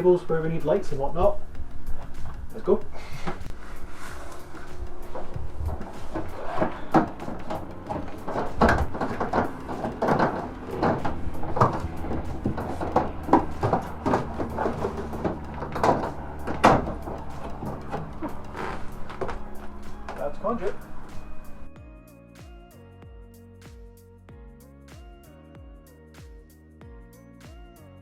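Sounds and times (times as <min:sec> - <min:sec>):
plastic pipe knocks and clatter: 0:06.9 - 0:18.0.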